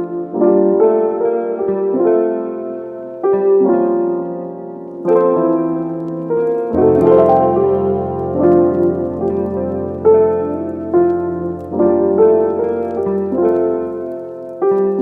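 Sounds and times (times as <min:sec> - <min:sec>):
piano chords: 0:00.0 - 0:15.0
low bass note: 0:06.8 - 0:11.7.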